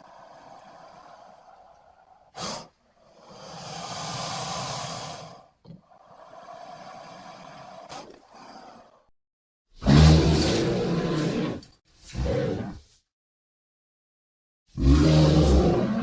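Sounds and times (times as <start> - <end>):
creature hissing: 0.0 - 9.0.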